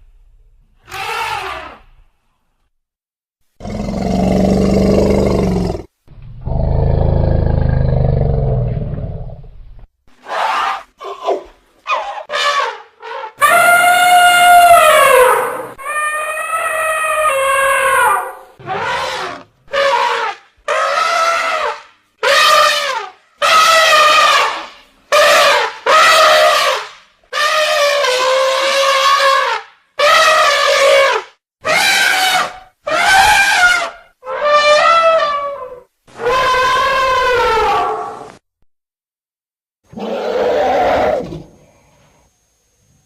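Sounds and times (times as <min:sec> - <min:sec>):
elephant trumpeting: 0:00.9 - 0:01.8, 0:11.9 - 0:38.3.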